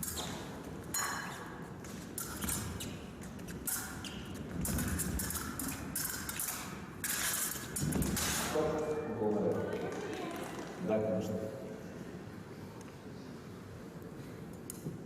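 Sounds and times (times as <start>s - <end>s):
fencing blades clicking: 0.0s - 1.1s, 2.1s - 8.5s
shoes squeaking and tapping: 0.0s - 8.4s.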